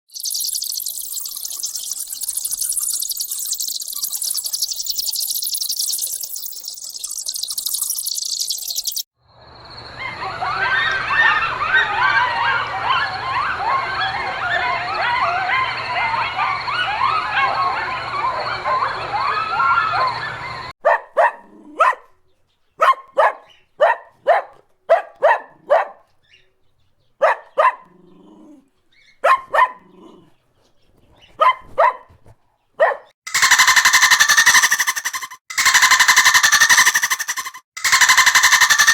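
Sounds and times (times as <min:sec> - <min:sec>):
chorus of high chirping calls: 0:00.1 - 0:09.1, 0:33.3 - 0:38.9
dog barking: 0:20.8 - 0:22.2, 0:22.8 - 0:26.1, 0:27.2 - 0:28.6, 0:29.2 - 0:30.3, 0:31.3 - 0:32.2, 0:32.8 - 0:33.1.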